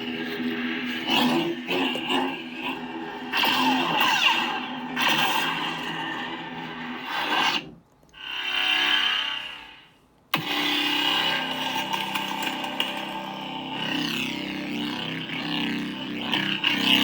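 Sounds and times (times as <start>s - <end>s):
lightsaber hum: 10.4s - 17.0s.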